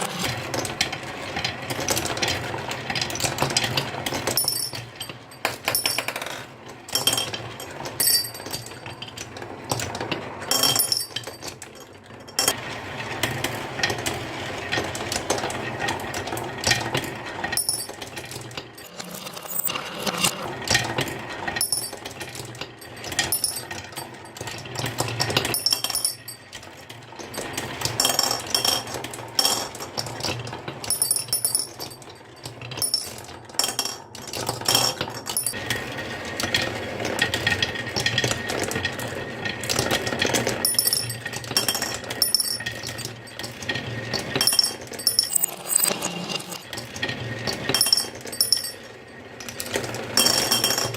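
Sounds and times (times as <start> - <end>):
marbles rolling on track: 0.0 - 50.9
marbles clicking and clinking: 18.8 - 20.4, 40.4 - 46.9, 47.5 - 50.9.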